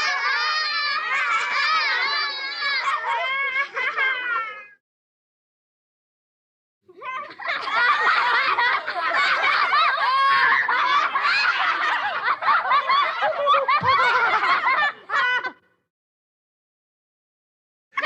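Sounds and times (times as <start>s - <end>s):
children laughing and giggling: 0.0s - 4.8s, 6.9s - 15.9s.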